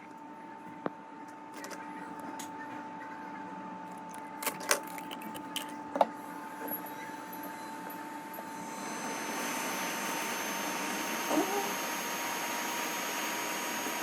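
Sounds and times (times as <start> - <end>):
hot-air rework station blowing: 6.0 - 14.0.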